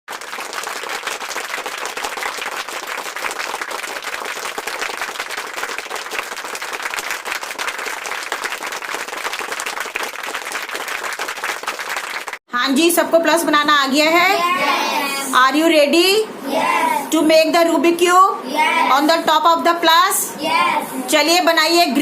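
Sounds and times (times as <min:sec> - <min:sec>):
applause: 0:00.1 - 0:12.4.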